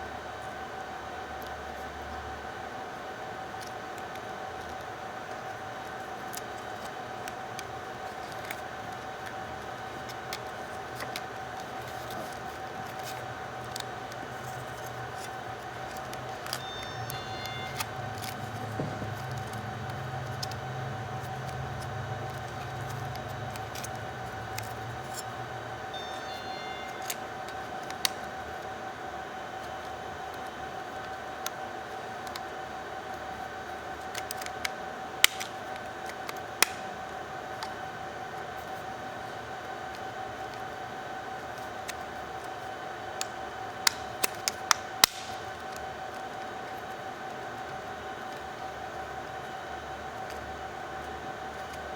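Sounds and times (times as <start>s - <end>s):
high-pitched electrical hum: 0.0s - 51.9s
small parts clicking and tapping: 3.6s - 25.4s, 26.0s - 28.3s, 34.0s - 36.9s, 43.2s - 46.9s.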